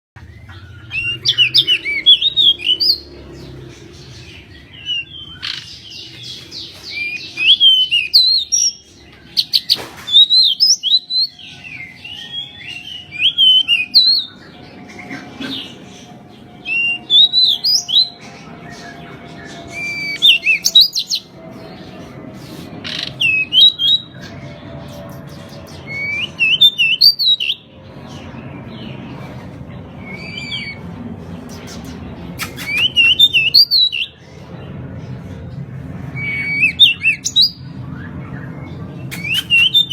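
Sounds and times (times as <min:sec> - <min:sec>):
bird singing whistled notes: 0:39.1 - 0:39.9.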